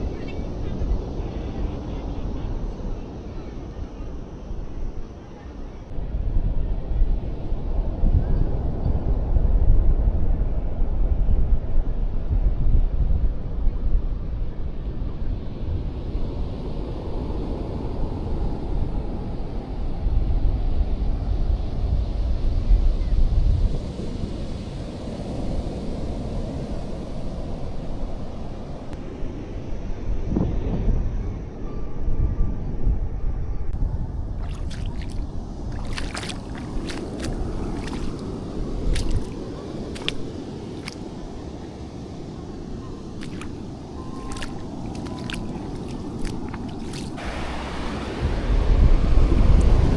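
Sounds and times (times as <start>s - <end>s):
wind buffeting microphone: 0.0s - 49.9s
water splashing among rocks: 34.3s - 41.2s, 43.1s - 49.8s.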